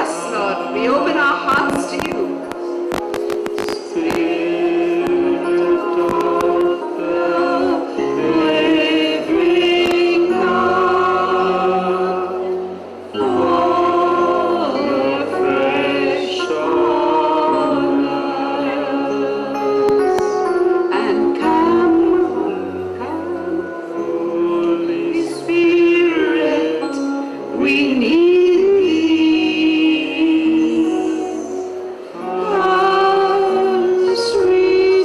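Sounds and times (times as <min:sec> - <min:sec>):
choir singing gospel: 0:00.0 - 0:35.0.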